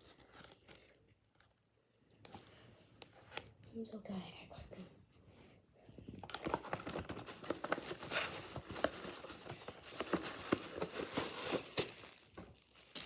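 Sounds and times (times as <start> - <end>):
packaging rustling and crinkling: 6.2 - 13.0.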